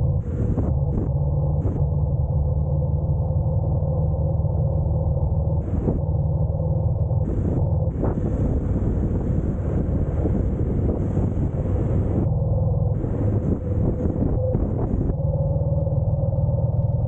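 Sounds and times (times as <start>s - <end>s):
motorcycle engine rumble: 0.0s - 17.0s
hissing wind noise: 7.2s - 12.3s, 13.0s - 15.2s.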